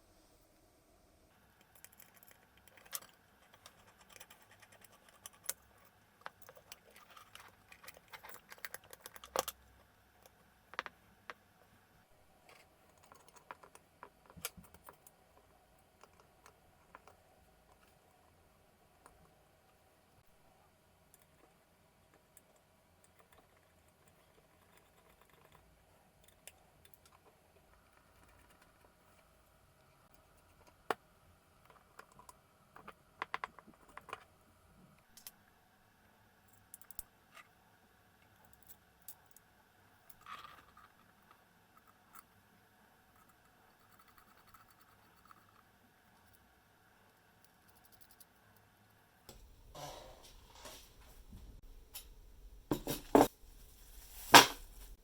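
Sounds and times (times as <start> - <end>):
small parts clicking and tapping: 1.5 - 11.4, 12.4 - 18.0, 22.1 - 29.0, 36.5 - 37.1, 47.4 - 48.7.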